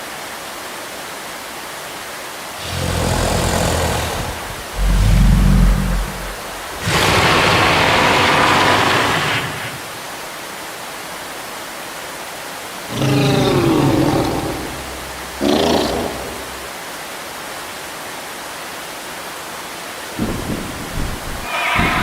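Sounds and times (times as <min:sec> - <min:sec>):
waterfall rushing: 0:00.0 - 0:22.0
long hissing roar: 0:02.5 - 0:10.0, 0:12.8 - 0:17.0, 0:21.4 - 0:22.0
wavering pitched creature call: 0:02.6 - 0:09.8, 0:12.9 - 0:16.8, 0:21.4 - 0:22.0
deep low rumble: 0:04.7 - 0:06.8.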